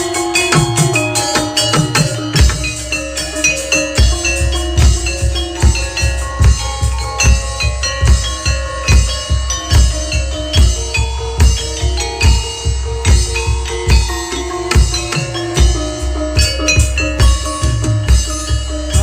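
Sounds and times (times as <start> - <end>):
heavy bass drum beat: 0.0 - 19.0
ringing metallophone notes: 0.0 - 19.0.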